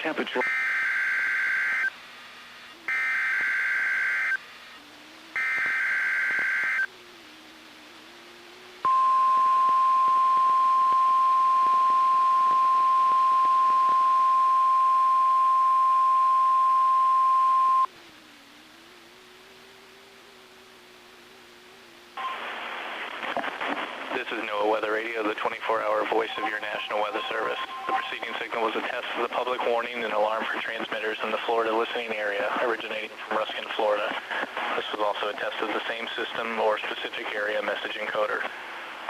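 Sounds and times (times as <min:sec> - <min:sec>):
faint radio hiss: 0:00.0 - 0:39.0
harsh buzzing data bursts: 0:00.1 - 0:23.0
steady warning alarm tone: 0:00.4 - 0:02.0, 0:02.6 - 0:06.9, 0:08.8 - 0:17.9.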